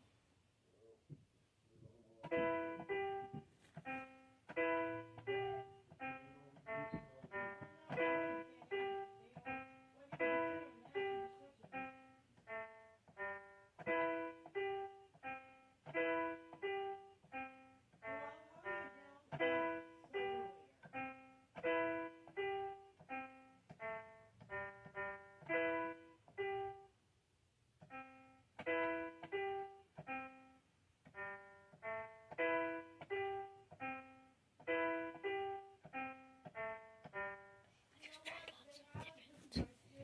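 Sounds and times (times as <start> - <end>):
piano music: 2.1 - 27.0, 27.8 - 37.7.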